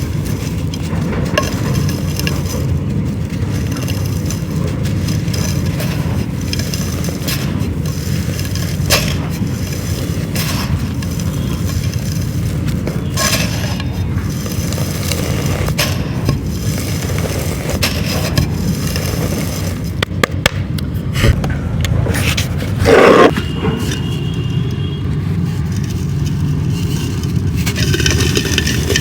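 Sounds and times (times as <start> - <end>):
dried clay crumbling by hand: 0.0 - 21.5
low background rumble: 0.0 - 29.0.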